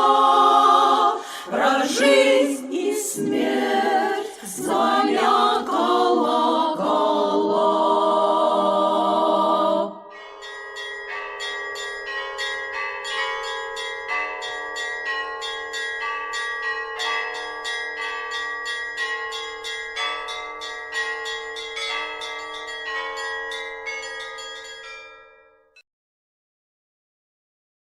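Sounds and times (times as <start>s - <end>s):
women's choir singing: 0.0s - 10.1s
church bells ringing: 9.9s - 25.6s.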